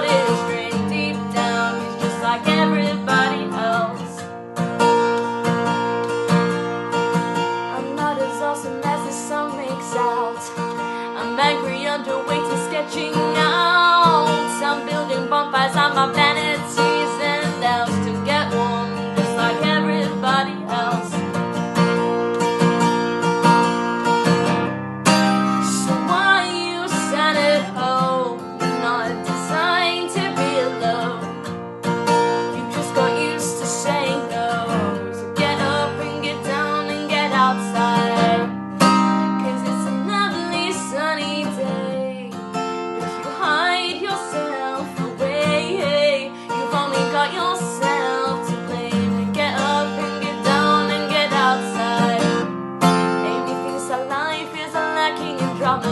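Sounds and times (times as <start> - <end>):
woman singing: 0.0 - 4.4, 7.4 - 21.6, 25.1 - 55.9
strummed acoustic guitar: 0.0 - 55.9.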